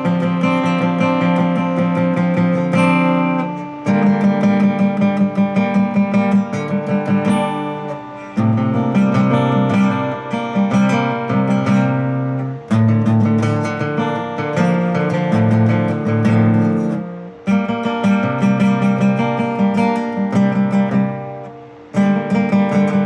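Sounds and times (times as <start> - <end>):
guitar strumming chords: 0.0 - 23.0.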